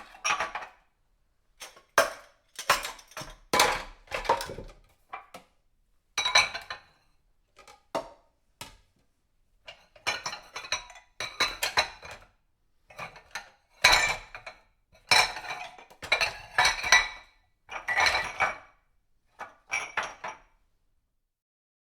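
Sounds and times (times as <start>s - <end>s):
dishes clinking and clattering: 0.0s - 0.8s, 1.6s - 5.3s, 6.2s - 7.0s, 9.7s - 12.2s, 12.9s - 18.8s, 19.4s - 20.6s.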